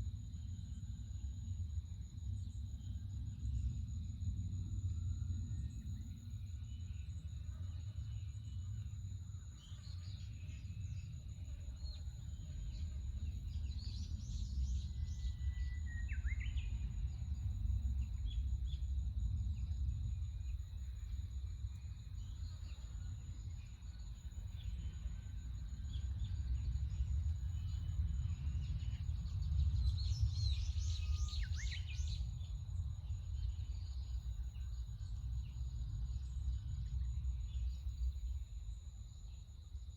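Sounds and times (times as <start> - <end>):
steady low rumble: 16.5 - 39.2.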